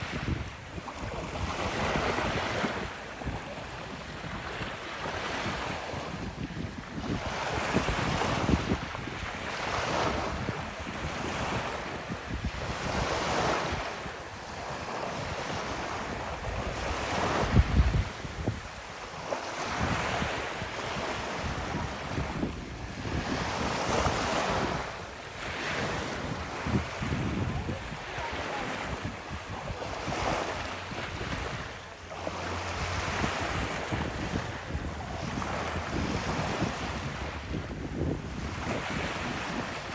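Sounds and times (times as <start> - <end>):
ocean waves breaking on beach: 0.0 - 39.9
wind buffeting microphone: 0.0 - 39.9.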